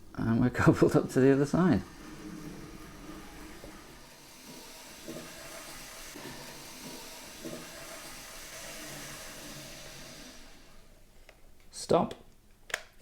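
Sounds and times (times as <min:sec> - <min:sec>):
wheels rumbling on rails: 0:01.3 - 0:10.9
model train motor whir: 0:01.5 - 0:11.0.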